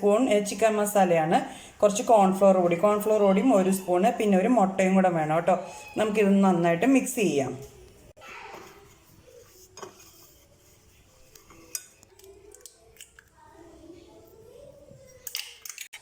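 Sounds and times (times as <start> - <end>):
spoon stirring thick paste: 1.8 - 13.5.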